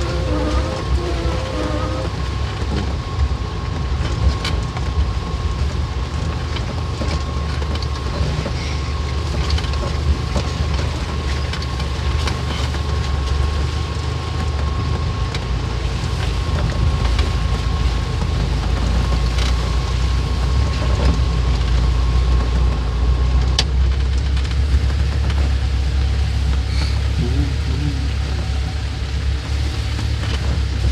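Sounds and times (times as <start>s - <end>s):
thin steady whine: 0.0s - 5.8s
low engine rumble: 0.0s - 30.9s.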